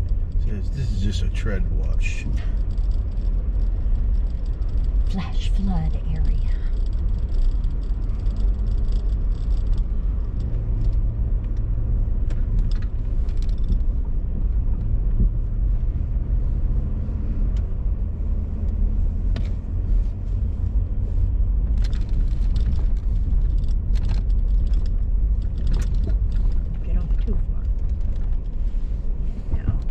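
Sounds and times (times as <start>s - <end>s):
vehicle engine and road rumble: 0.0s - 29.9s
rattles and knocks: 21.6s - 28.6s.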